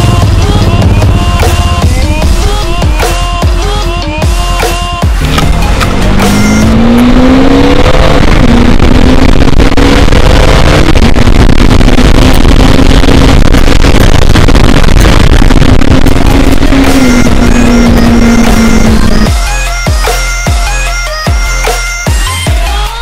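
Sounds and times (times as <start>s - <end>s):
motorcycle engine accelerating: 0.0s - 19.5s
wind noise on microphone: 5.3s - 19.3s.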